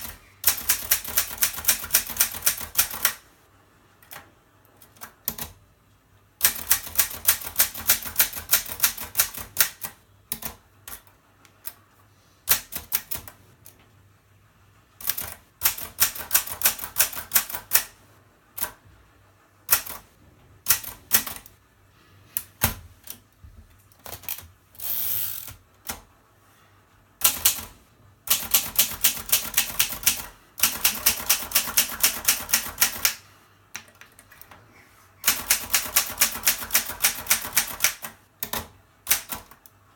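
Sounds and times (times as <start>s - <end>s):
typewriter rasp: 0.0s - 3.2s, 6.4s - 11.0s, 15.0s - 17.9s, 28.3s - 33.2s, 35.2s - 39.5s.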